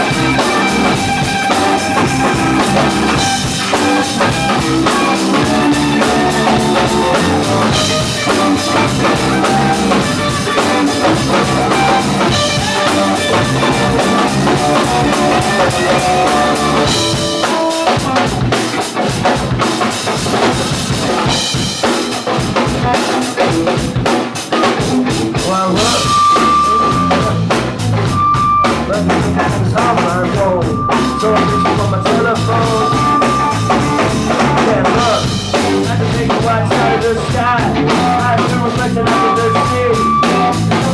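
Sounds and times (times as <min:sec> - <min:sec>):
high held note: 0:00.0 - 0:18.2
drum kit: 0:00.0 - 0:40.9
guitars: 0:00.0 - 0:40.9.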